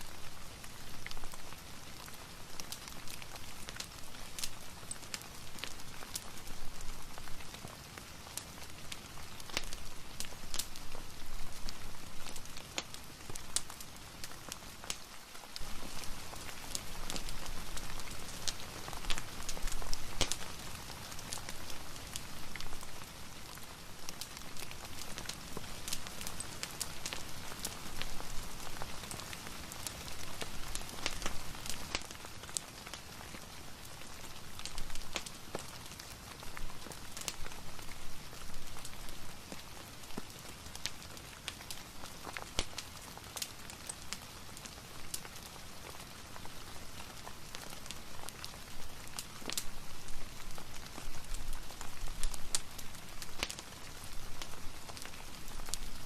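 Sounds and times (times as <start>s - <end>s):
crackling fireplace: 0.0s - 56.0s
steady rain: 0.0s - 56.0s.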